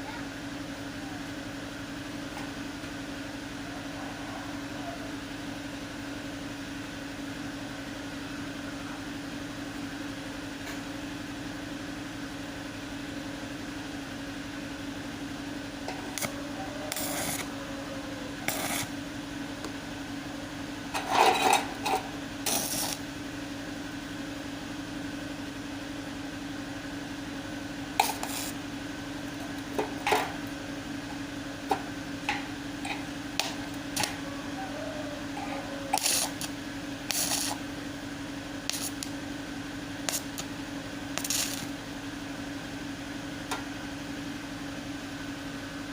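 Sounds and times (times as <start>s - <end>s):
electrical hum: 0.0s - 45.9s.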